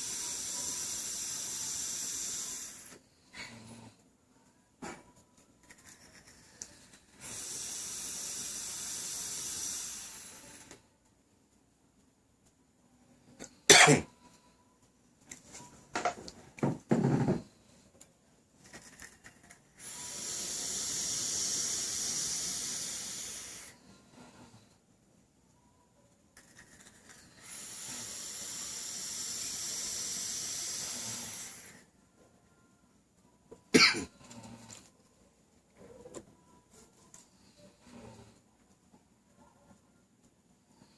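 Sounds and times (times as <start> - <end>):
faint high whistling tones: 0.0 - 3.0, 25.4 - 26.2, 28.7 - 33.6
steady hiss: 0.0 - 14.1, 18.7 - 24.9, 26.4 - 32.0
person snoring: 7.2 - 10.7, 19.8 - 24.7, 27.3 - 31.9.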